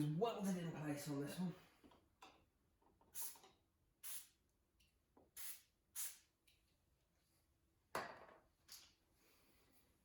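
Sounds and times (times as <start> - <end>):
aerosol can spraying: 3.1 - 4.4, 5.3 - 6.3.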